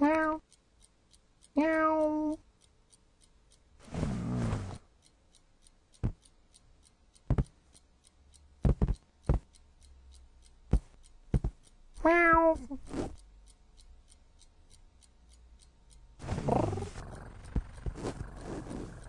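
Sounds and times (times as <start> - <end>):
cat meowing: 0.0 - 0.4, 1.6 - 2.4, 12.0 - 12.7
faint fast ticking: 0.0 - 19.0
sharp clicks and knocks: 5.3 - 16.3
cat making raspy sound: 16.2 - 19.0.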